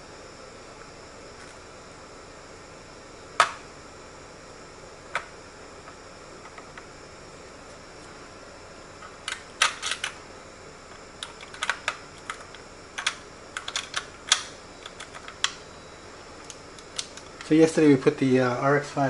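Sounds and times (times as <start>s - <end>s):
computer parts clicking: 11.2s - 15.6s.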